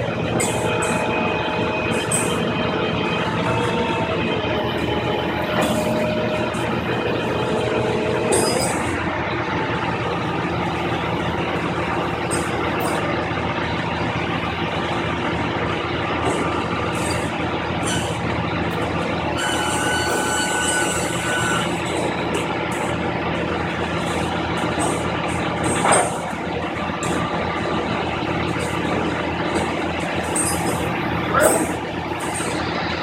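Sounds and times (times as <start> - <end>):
heavy vehicle engine running: 0.0 - 33.0
brief higher whine: 19.2 - 22.2.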